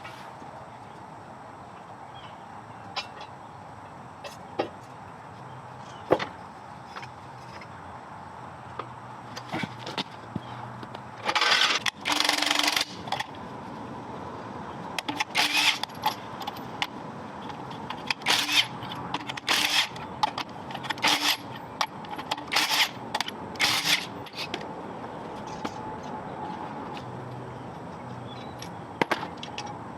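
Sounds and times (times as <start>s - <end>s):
power tool bursts: 15.3s - 15.9s, 18.2s - 18.7s, 19.5s - 20.0s, 21.0s - 21.4s, 22.5s - 23.0s, 23.6s - 24.1s.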